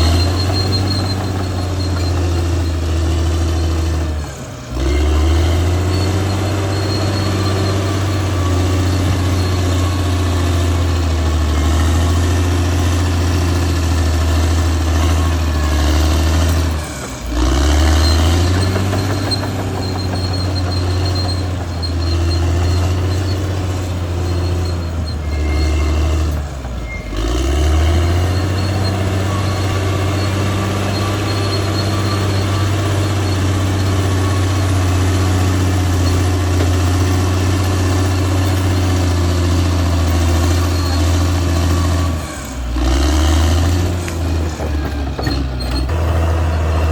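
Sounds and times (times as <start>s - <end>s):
bulldozer diesel engine running: 0.0s - 46.9s.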